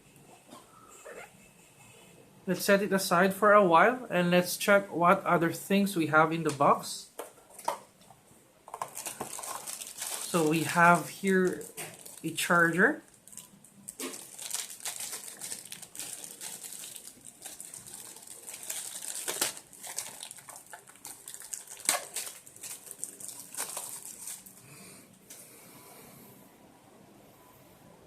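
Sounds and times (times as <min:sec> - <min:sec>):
packaging crinkling and rustling: 0:08.6 - 0:24.6.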